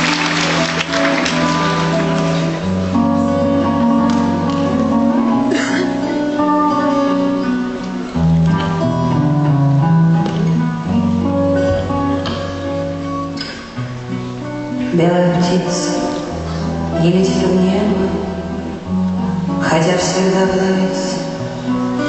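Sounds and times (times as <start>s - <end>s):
bass line: 0.0s - 13.1s
guitar chords: 0.0s - 22.0s.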